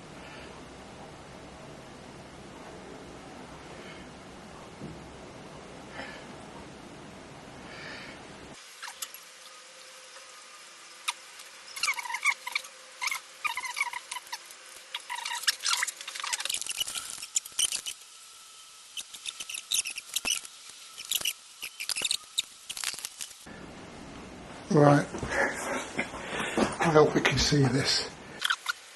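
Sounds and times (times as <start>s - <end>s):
handling clicks and squeaks: 11.0s - 18.0s, 18.9s - 23.4s, 28.4s - 28.8s.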